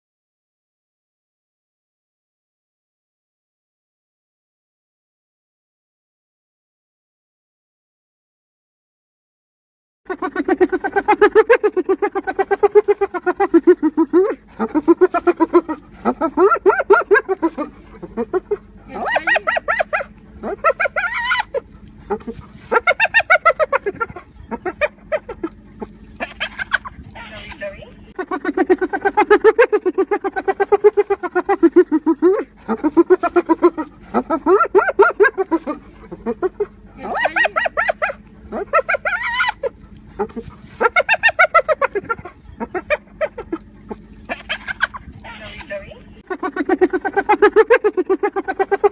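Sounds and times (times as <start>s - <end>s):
hyena laughing call: 10.1s - 48.9s.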